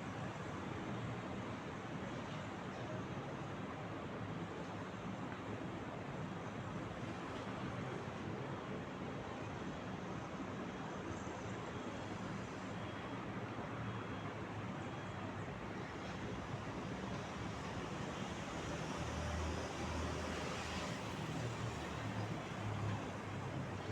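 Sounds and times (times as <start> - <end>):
city traffic hum: 12.3 - 23.9.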